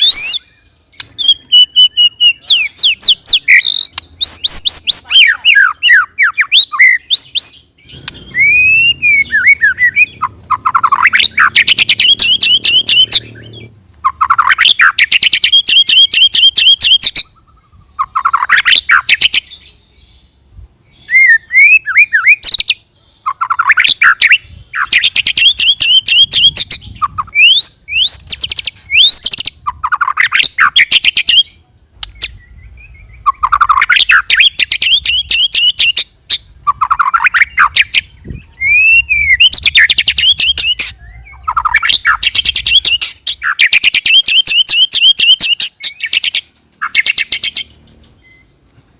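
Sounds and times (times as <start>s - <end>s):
songbird trilling song: 0.0s - 48.7s
whistled glides: 8.1s - 13.6s.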